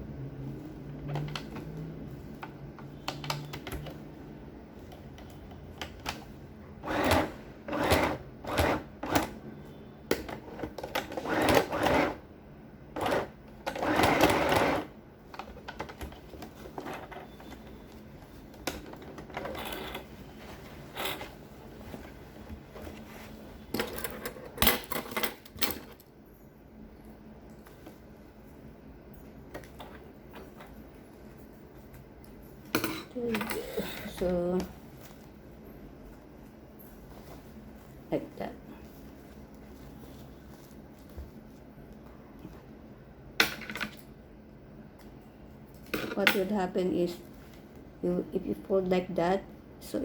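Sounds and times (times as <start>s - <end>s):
sewing machine stitching: 6.8s - 9.4s, 10.4s - 12.2s, 12.9s - 14.9s.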